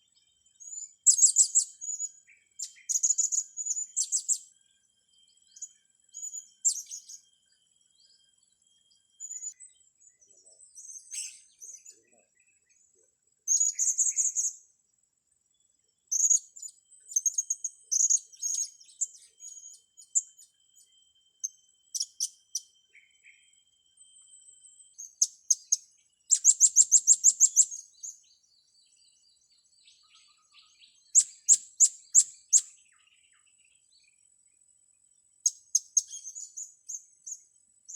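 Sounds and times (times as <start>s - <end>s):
small birds chirping and twittering: 0.0s - 37.9s.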